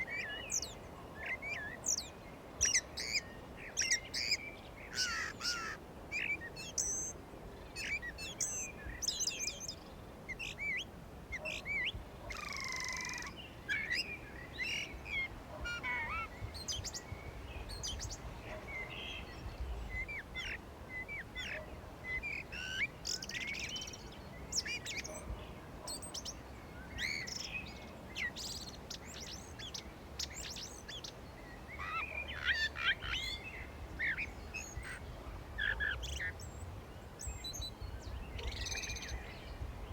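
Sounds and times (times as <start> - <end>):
birds chirping and singing: 11.4 - 36.6, 37.2 - 39.9.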